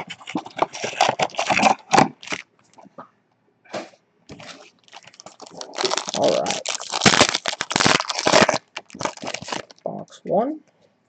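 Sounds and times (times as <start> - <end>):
card packaging crinkling: 0.0 - 2.5, 4.3 - 9.9.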